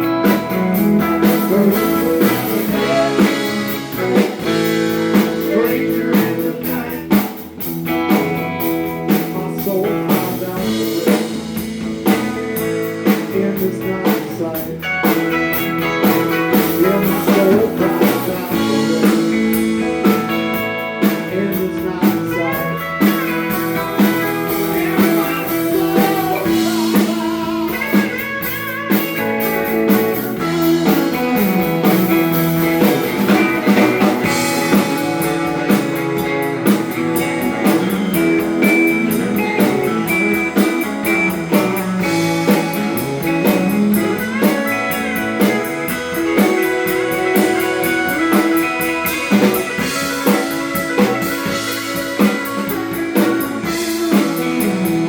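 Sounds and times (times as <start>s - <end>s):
drum kit: 0.0s - 55.0s
electric guitar: 0.0s - 55.0s.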